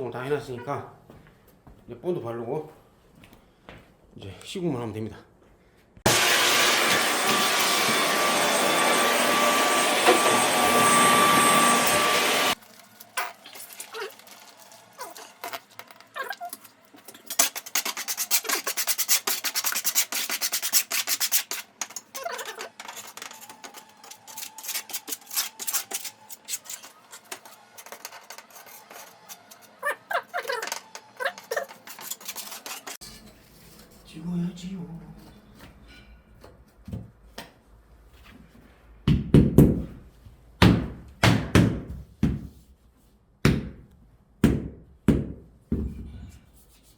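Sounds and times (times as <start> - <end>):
machine running with whining tones: 6.5 - 12.9
scraping and rubbing noises: 12.5 - 34.2.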